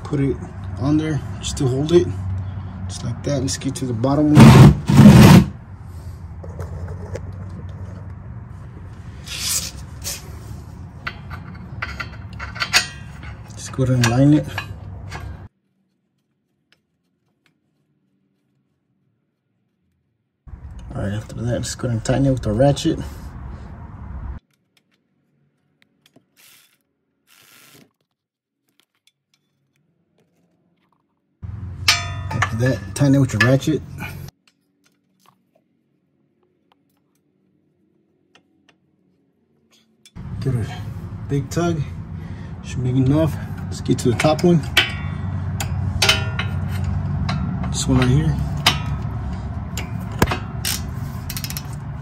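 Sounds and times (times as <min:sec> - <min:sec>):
metal scraping: 0:04.2 - 0:15.5, 0:43.0 - 0:52.0.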